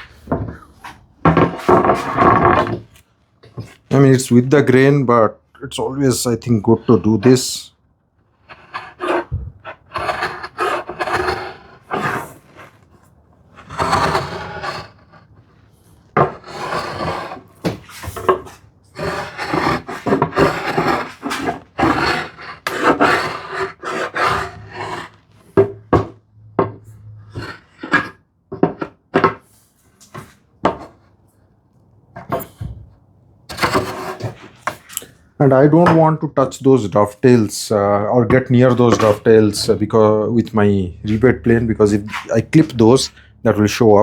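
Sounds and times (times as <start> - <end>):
hand tool rasping wood: 8.4 - 12.8, 13.6 - 15.1, 16.2 - 25.2.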